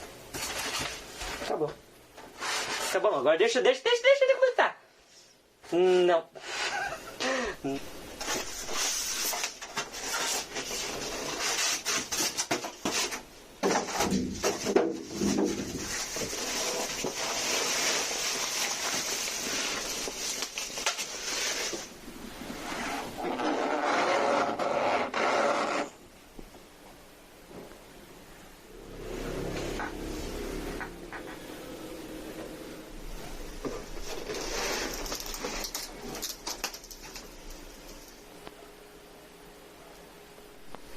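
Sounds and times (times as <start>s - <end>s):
packaging rubbing and scraping: 2.2s - 3.2s, 8.2s - 26.0s, 33.0s - 38.2s.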